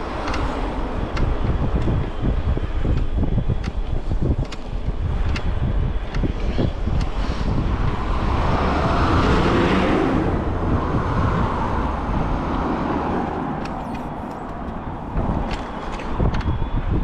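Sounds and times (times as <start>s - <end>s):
wind rumble on microphone: 0.0s - 17.0s
vehicle passing close by: 7.2s - 15.5s.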